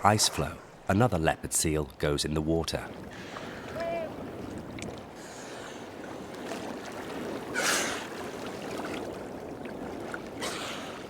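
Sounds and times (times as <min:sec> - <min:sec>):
rush of water: 0:02.6 - 0:11.0
water sloshing and lapping: 0:02.7 - 0:11.0.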